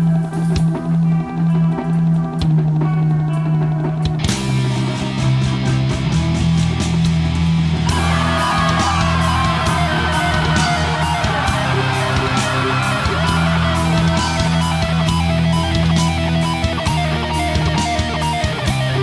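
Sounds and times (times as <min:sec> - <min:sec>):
heavy rock music: 0:00.0 - 0:19.0
higher guitar melody: 0:07.8 - 0:19.0.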